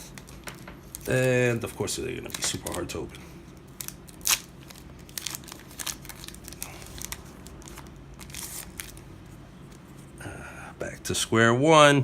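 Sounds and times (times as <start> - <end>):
foil wrapper crinkling and ripping: 0.0 - 9.1
low steady hum: 0.0 - 12.0.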